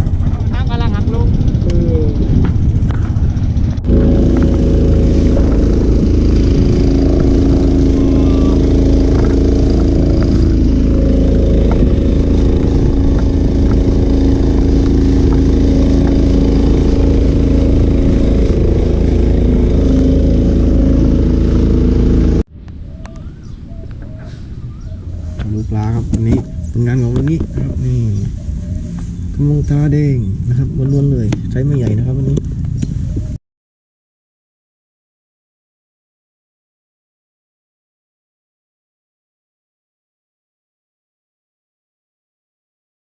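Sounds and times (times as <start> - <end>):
engine running at speed: 0.0 - 33.4
wind rumble on microphone: 0.0 - 33.4.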